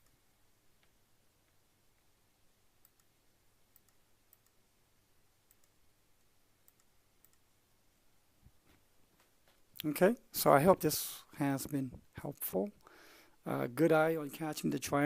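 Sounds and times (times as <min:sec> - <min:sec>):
soft clicks: 0:02.8 - 0:04.6, 0:05.4 - 0:07.5.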